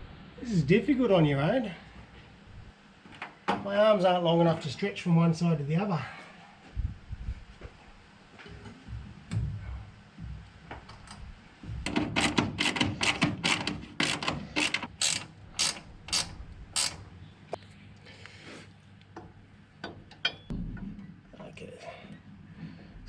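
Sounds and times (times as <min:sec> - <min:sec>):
metal parts knocking and clunking: 0:10.7 - 0:17.0
hand ratchet clicking: 0:11.9 - 0:17.0.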